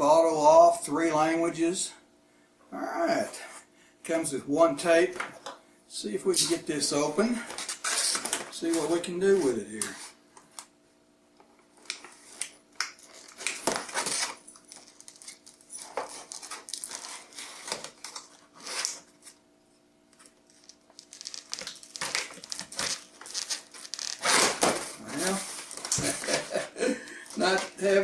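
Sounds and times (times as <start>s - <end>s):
plastic packaging crackling: 11.8s - 19.3s, 20.2s - 26.6s.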